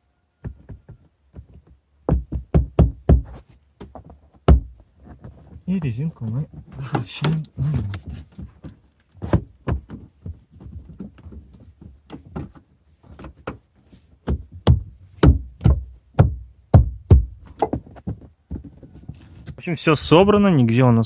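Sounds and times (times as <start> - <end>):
hand knocking on car trim: 0.4 - 4.8, 14.2 - 17.8.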